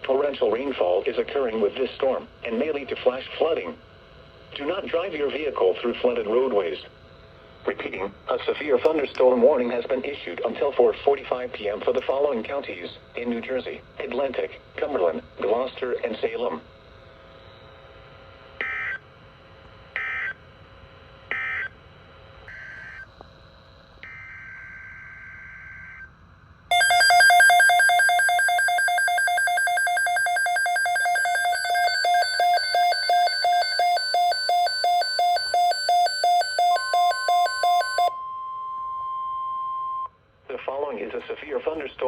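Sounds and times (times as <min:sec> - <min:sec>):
rapid pulsing beeps: 0:26.7 - 0:38.2
electronic alert tone: 0:26.7 - 0:38.3.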